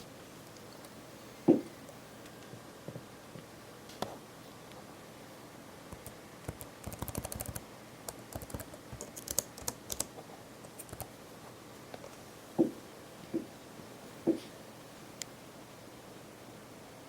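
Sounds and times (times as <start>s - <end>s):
laptop keyboard keys clicking: 5.9s - 11.1s.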